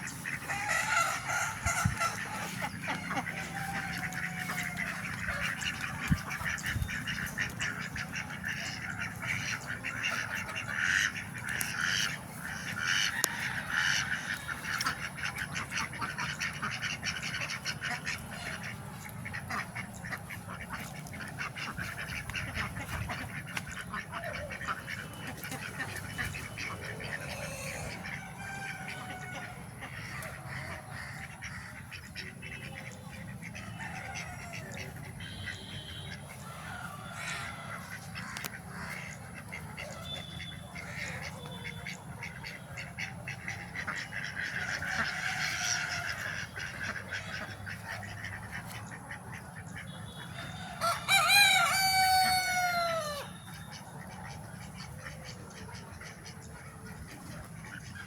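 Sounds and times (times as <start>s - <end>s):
chickens clucking: 0.0s - 58.0s
rooster crowing: 0.5s - 2.2s, 3.0s - 5.0s, 13.0s - 14.5s, 27.2s - 29.6s, 33.6s - 34.8s, 36.4s - 37.9s, 50.2s - 53.4s.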